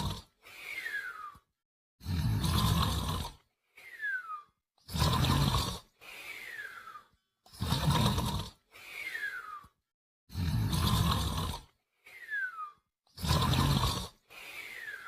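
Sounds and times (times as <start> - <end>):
rasping snore: 0.0 - 1.0, 2.0 - 3.5, 4.8 - 9.2, 10.3 - 11.8, 13.1 - 15.0.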